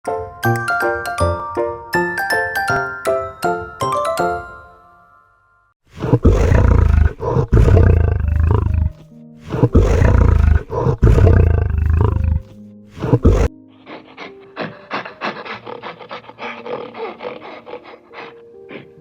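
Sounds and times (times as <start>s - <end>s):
background music: 0.0s - 5.6s, 7.6s - 19.0s
big cat roaring and growling: 6.0s - 13.5s.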